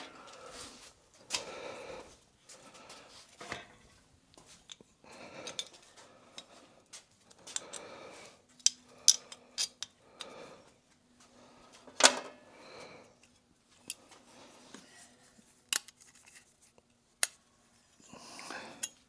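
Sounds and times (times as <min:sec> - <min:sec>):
metal tools clinking and rattling: 0:08.6 - 0:10.4.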